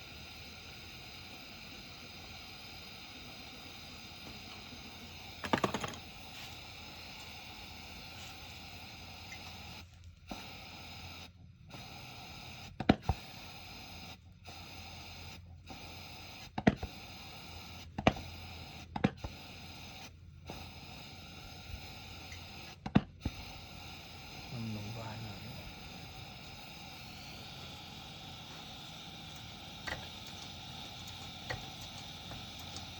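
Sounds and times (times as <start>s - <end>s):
pressure lantern hissing: 0.0s - 32.9s
sharp clicks: 28.2s - 32.9s.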